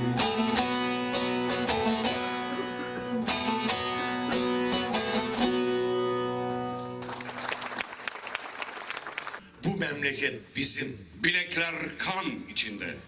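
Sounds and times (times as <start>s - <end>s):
plucked string instrument strums: 0.0s - 7.0s
applause: 6.8s - 9.4s.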